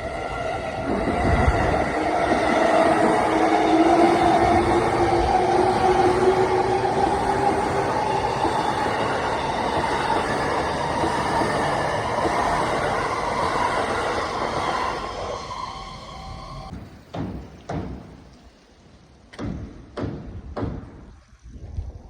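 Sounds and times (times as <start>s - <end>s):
electric train rolling rumble: 0.0s - 17.1s.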